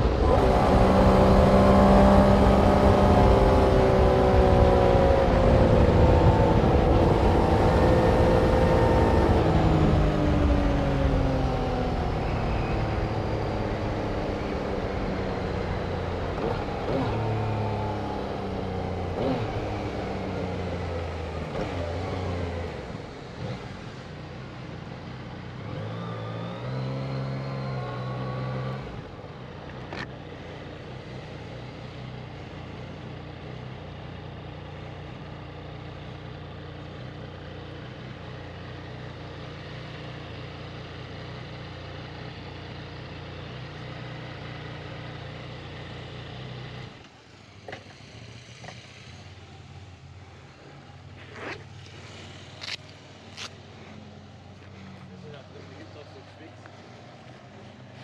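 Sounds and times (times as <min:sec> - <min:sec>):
engine accelerating: 0:00.0 - 0:24.7, 0:25.5 - 0:32.8, 0:43.7 - 0:58.0
engine slowing down: 0:00.0 - 0:58.0
low engine hum: 0:00.0 - 0:58.0.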